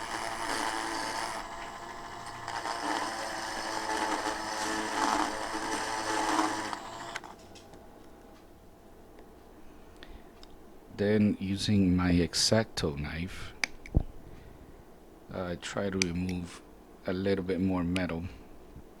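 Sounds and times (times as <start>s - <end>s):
rotary tool grinding metal: 0.0s - 7.4s.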